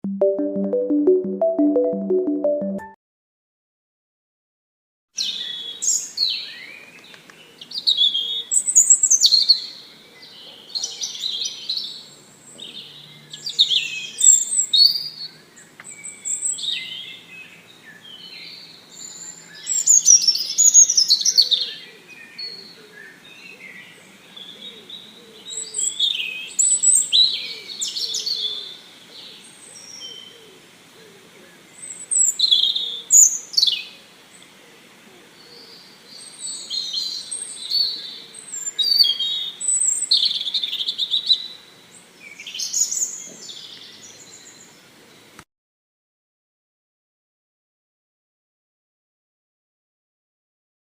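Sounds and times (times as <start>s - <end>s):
songbird chirping and singing: 5.2s - 30.6s, 31.5s - 34.6s, 35.3s - 45.3s.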